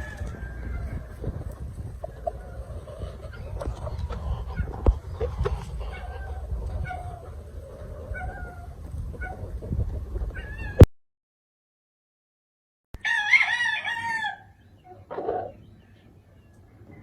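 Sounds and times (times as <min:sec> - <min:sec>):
rooster crowing: 0:00.0 - 0:01.1, 0:13.0 - 0:14.6
low rumbling noise: 0:00.0 - 0:10.8.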